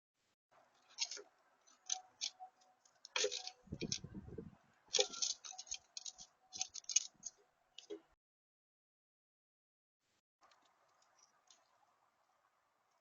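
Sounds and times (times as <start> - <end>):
birds pecking at a feeder: 0.6 - 8.1, 10.4 - 13.0.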